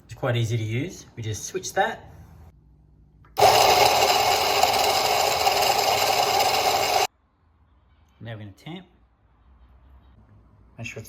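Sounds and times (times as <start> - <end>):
coffee grinder motor whining: 3.4 - 7.1.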